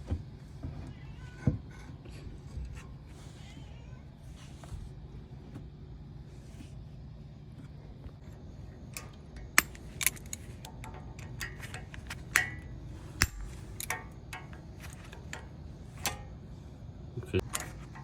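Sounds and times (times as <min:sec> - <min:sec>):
steady low hum: 0:00.0 - 0:18.0
pry bar clicking on metal: 0:09.0 - 0:15.4.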